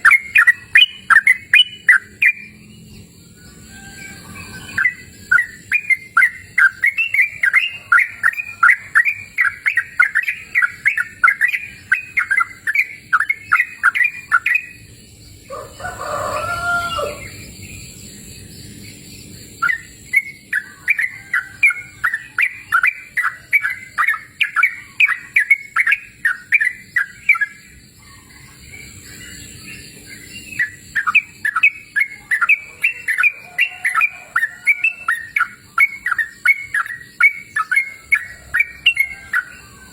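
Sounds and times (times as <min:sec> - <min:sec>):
low drawn-out bird call: 0:29.7 - 0:39.9.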